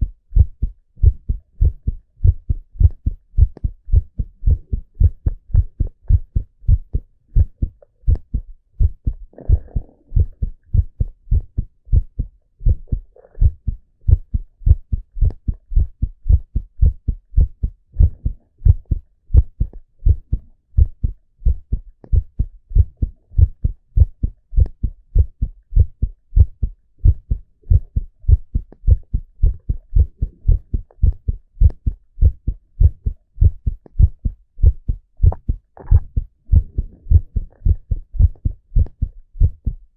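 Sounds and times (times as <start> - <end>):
heartbeat thumps: 0.0 - 39.9.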